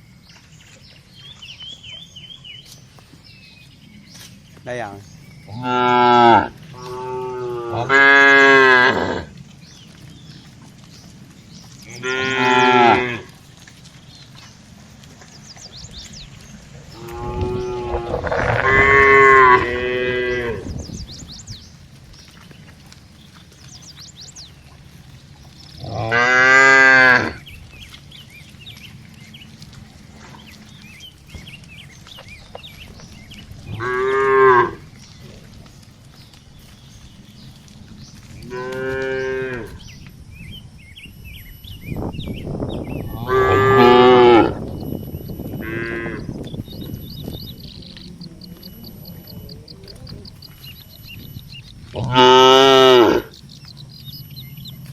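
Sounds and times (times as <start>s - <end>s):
cattle mooing: 5.5s - 9.4s, 11.8s - 13.4s, 16.8s - 20.8s, 25.8s - 27.5s, 33.6s - 34.9s, 38.4s - 39.8s, 43.1s - 44.6s, 45.5s - 46.4s, 51.8s - 53.4s.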